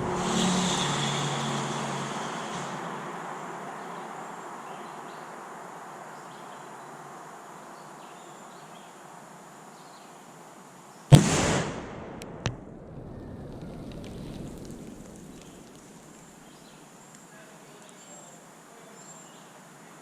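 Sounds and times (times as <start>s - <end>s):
faint outdoor hiss: 0.6s - 20.0s
loud sharp bang: 11.1s - 15.8s.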